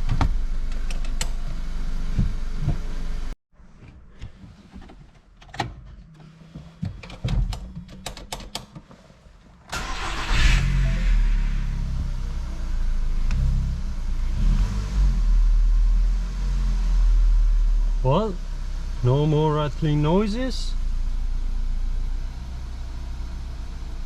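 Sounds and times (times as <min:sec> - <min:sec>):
scattered clicks and knocks: 0:06.8 - 0:08.8
car engine running: 0:09.7 - 0:24.0.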